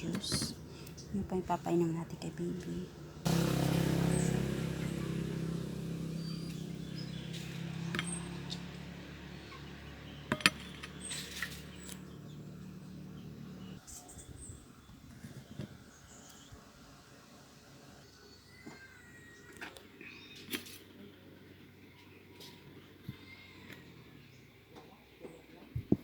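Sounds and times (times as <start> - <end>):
birds chirping: 0.0 - 16.8.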